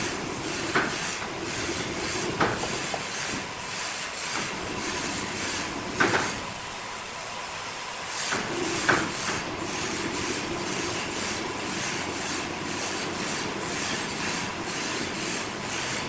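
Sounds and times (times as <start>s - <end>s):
sawmill machinery swishing: 0.0s - 6.7s.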